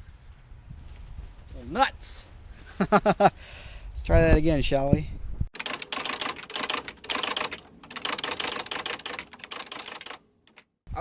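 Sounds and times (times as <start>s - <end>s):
toy blaster firing with rapid clicking: 5.6s - 10.2s.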